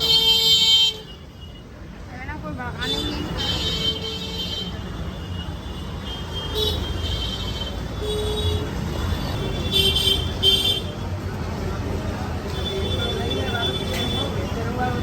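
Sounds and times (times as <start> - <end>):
traffic engines rumbling: 0.0 - 15.0.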